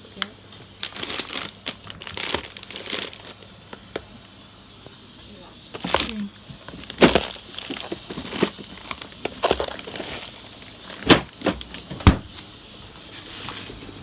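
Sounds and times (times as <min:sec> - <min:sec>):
packaging crinkling: 0:00.6 - 0:04.3, 0:05.7 - 0:13.8.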